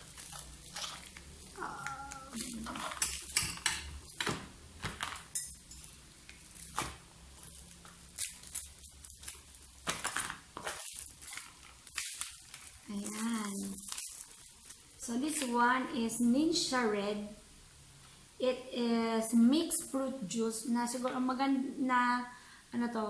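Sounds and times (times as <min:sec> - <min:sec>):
packaging rustling and crinkling: 0:00.0 - 0:15.6.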